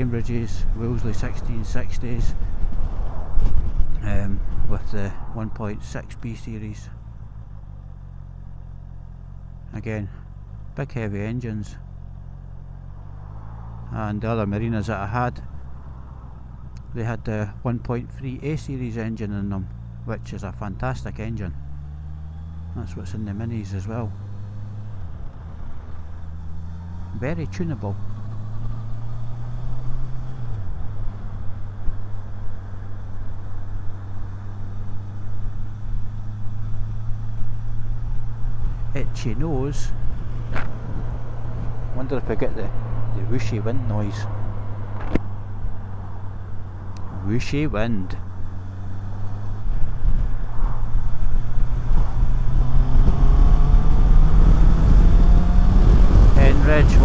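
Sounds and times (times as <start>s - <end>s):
wind noise: 0.0s - 6.2s, 38.3s - 47.4s, 49.0s - 57.0s
motorcycle engine running: 0.0s - 13.8s, 20.8s - 57.0s
road rumble: 0.0s - 57.0s.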